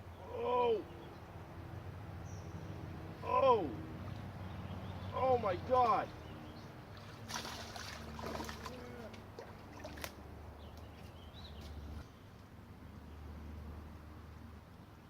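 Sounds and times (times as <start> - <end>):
water splashing: 6.8 - 10.2.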